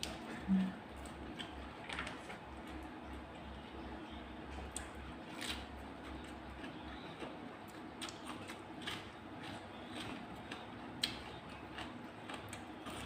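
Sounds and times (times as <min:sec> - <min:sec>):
eating with utensils clicking: 0:04.6 - 0:13.0.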